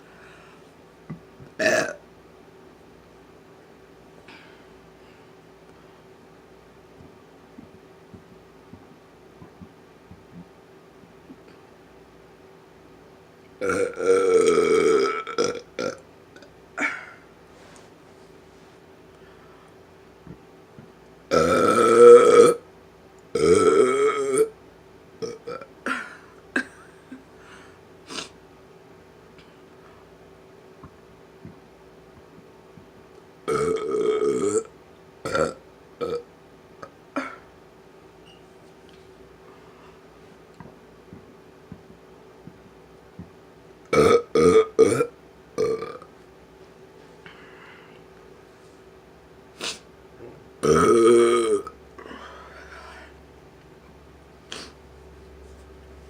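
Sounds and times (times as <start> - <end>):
person burping loudly: 1.6 - 2.0, 13.6 - 17.2, 21.3 - 22.6, 23.4 - 24.5, 25.2 - 26.8, 33.5 - 36.2, 43.9 - 46.1, 50.6 - 52.1.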